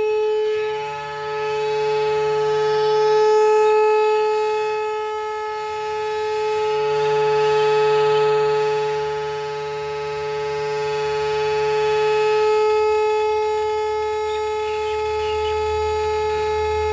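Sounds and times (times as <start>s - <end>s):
horn steady tone: 0.0s - 16.9s.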